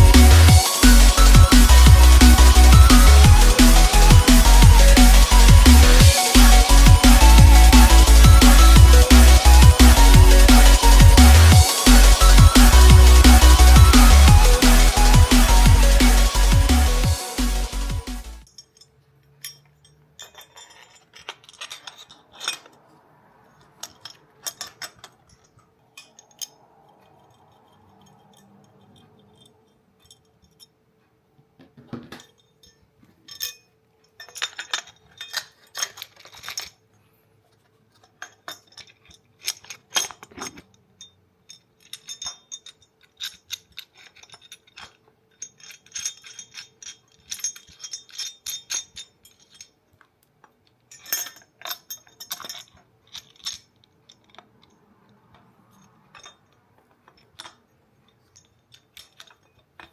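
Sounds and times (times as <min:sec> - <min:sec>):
small metal parts clinking: 0:00.0 - 0:16.6, 0:18.4 - 0:30.8, 0:31.6 - 0:59.9.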